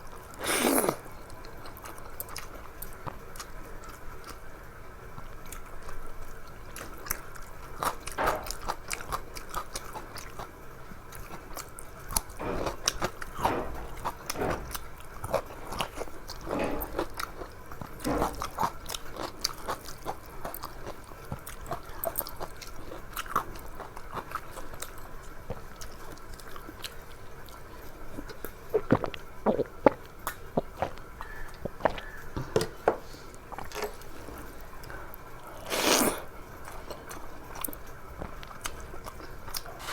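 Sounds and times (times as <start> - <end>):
person chewing food: 0.0 - 4.5, 6.7 - 39.9.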